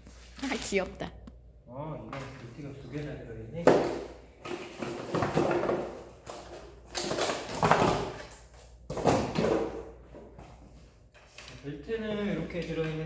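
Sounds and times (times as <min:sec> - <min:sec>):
packaging rustling and scraping: 0:04.4 - 0:08.7.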